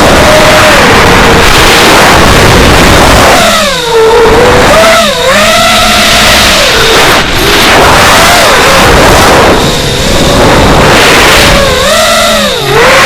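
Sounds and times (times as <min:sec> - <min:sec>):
drone motors whining: 0:00.0 - 0:13.0
loud rushing noise: 0:00.0 - 0:13.0.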